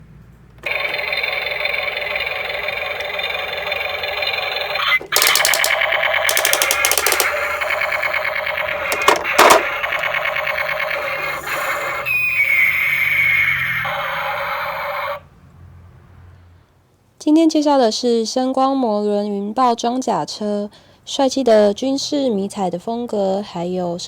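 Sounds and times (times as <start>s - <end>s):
fast rattling bursts: 0.6s - 12.0s.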